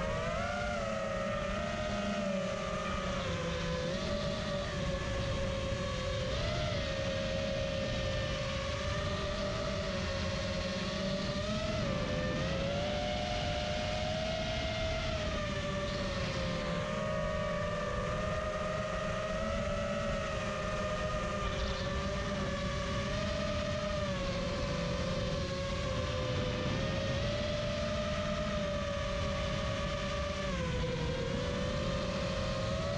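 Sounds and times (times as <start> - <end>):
drone propellers whining: 0.0 - 32.9.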